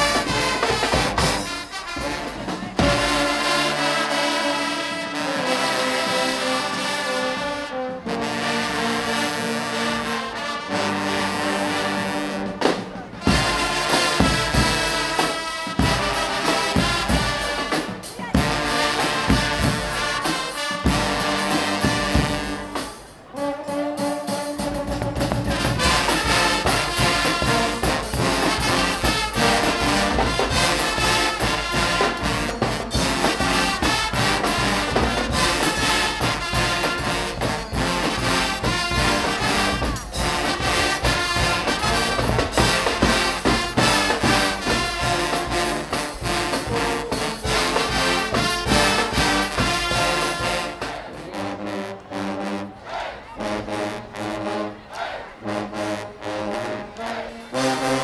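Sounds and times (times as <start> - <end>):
steady drumbeat: 0.0 - 4.0, 12.0 - 23.3, 24.1 - 51.3
brass band playing carnival music: 0.0 - 58.0.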